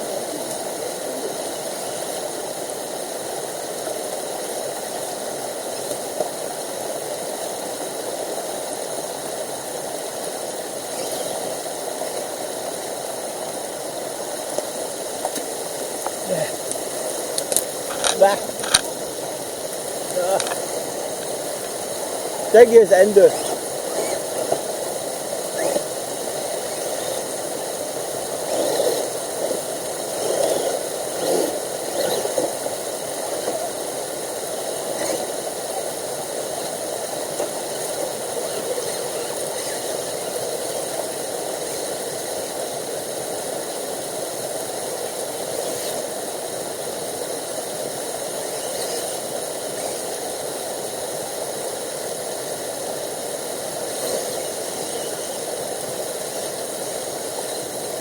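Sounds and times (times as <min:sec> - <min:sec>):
toy car electric motor rattling: 0:10.4 - 0:12.4, 0:15.2 - 0:50.9, 0:53.5 - 0:58.0.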